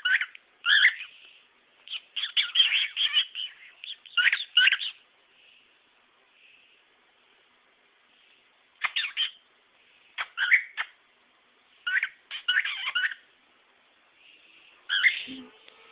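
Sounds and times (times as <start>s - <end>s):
cockatiel chirping: 0.0s - 1.2s, 1.9s - 5.0s, 8.8s - 9.4s, 10.2s - 11.0s, 11.8s - 13.3s, 14.9s - 15.3s.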